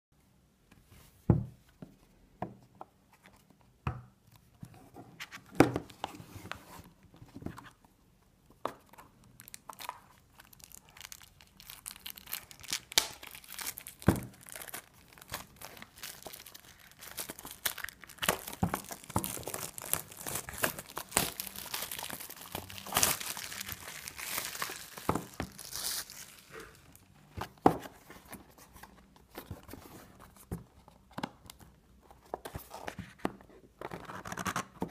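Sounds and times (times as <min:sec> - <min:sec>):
packaging tearing and crinkling: 0:09.4 - 0:27.0.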